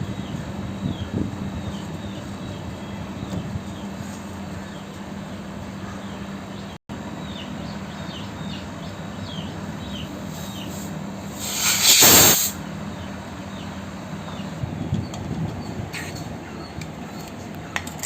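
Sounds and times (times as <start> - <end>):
gas hissing: 10.3 - 12.6.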